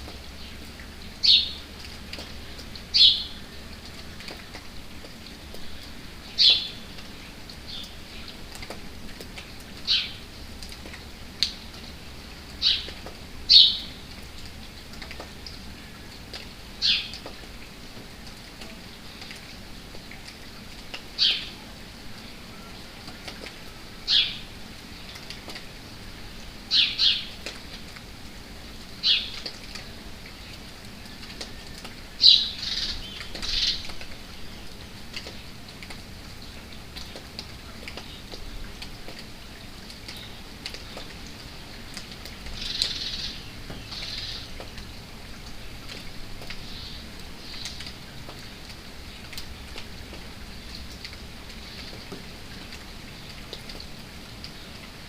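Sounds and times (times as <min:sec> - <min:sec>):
light rain patter: 0:00.0 - 0:55.0
small birds chirping: 0:00.3 - 0:03.6, 0:05.3 - 0:08.7, 0:09.8 - 0:10.2, 0:12.5 - 0:14.1, 0:15.2 - 0:17.4, 0:21.1 - 0:21.6, 0:22.2 - 0:25.2, 0:29.0 - 0:29.5, 0:30.4 - 0:35.5, 0:42.6 - 0:44.6, 0:46.6 - 0:47.9.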